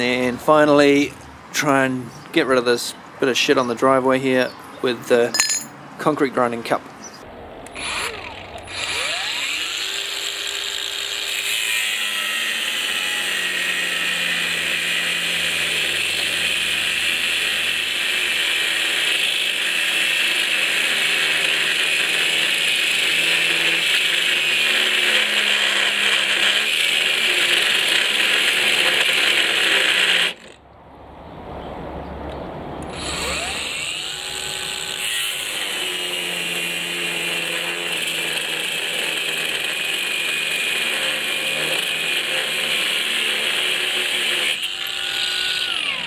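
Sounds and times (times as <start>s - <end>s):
angle grinder cutting steel: 7.6s - 30.6s, 32.9s - 46.0s.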